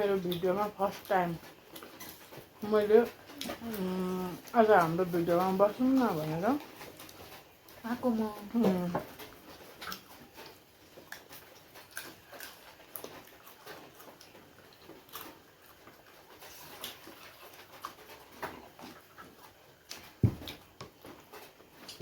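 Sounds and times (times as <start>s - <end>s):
chewing and mouth smacks: 6.6s - 7.8s, 9.1s - 22.0s
loud thump: 20.2s - 20.5s.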